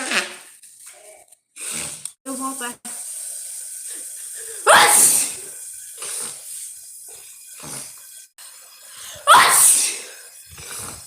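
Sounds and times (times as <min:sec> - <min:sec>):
woman sneezing: 0:04.6 - 0:05.4, 0:09.2 - 0:10.0.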